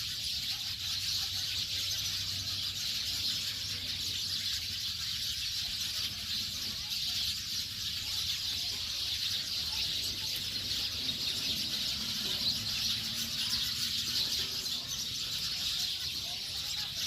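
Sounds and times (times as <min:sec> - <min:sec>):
high-pitched bird chirping: 0:00.0 - 0:17.0.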